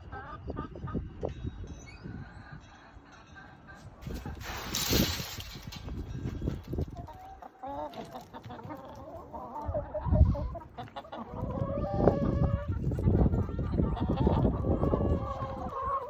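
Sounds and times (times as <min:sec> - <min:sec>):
hens clucking: 0:06.4 - 0:16.0.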